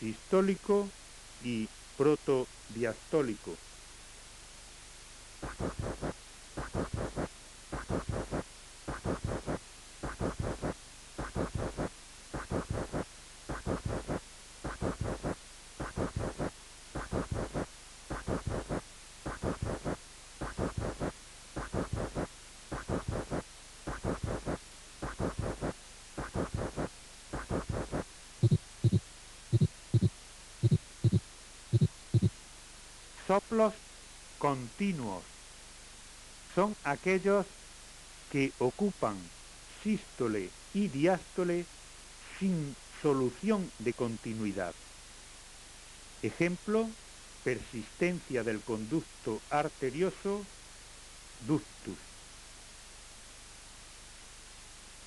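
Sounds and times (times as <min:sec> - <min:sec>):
heartbeats: 0:05.4 - 0:32.4
scratchy heart friction rub: 0:05.4 - 0:32.4.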